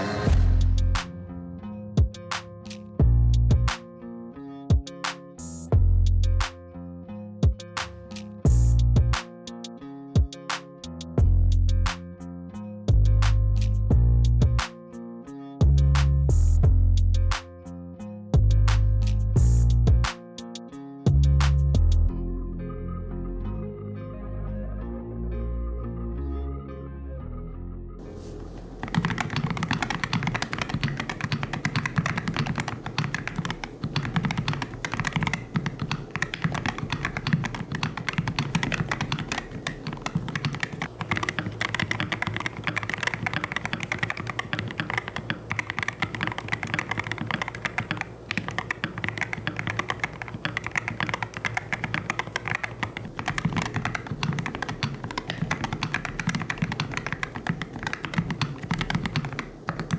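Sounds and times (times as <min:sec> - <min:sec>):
fast typing on mechanical keyboard: 0:28.0 - 0:59.9.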